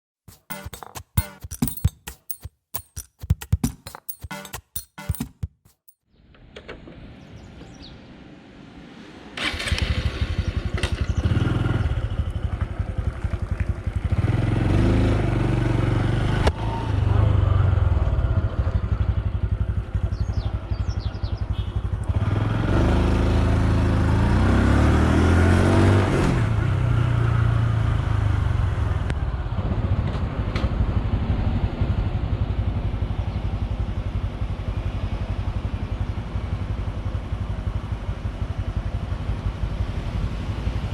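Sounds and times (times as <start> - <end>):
motorcycle engine revving: 9.4 - 28.6.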